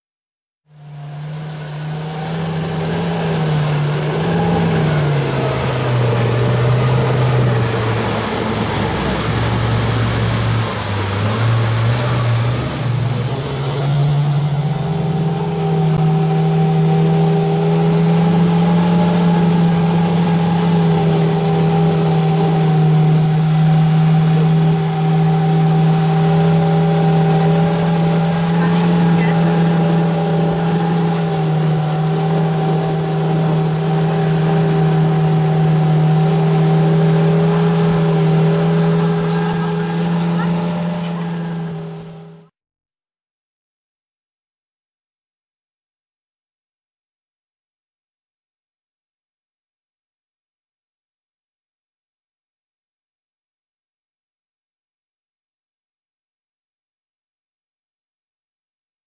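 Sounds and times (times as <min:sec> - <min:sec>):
vehicle engine running: 0:00.7 - 0:42.5.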